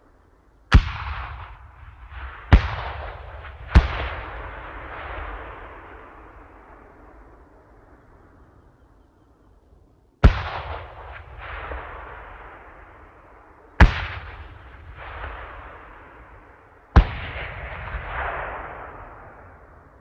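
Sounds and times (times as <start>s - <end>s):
explosion blasts with rumble: 13.8s - 19.8s.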